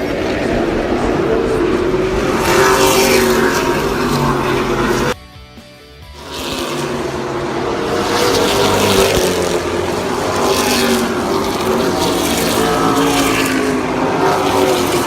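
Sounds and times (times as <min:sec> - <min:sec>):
race car engines at speed: 0:00.0 - 0:05.2, 0:06.1 - 0:15.0.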